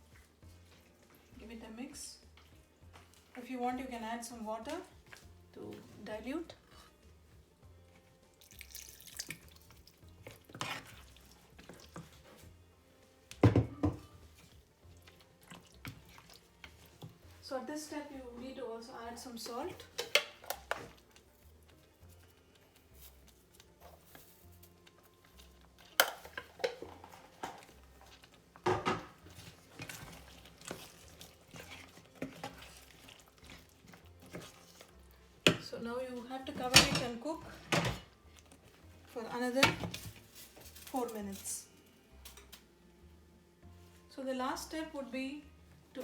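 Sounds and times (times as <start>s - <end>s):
spoon scraping a cooking pot: 9.7s - 12.5s, 22.3s - 35.6s
utensils clattering against pan: 19.5s - 21.0s, 25.8s - 34.9s, 36.5s - 38.2s.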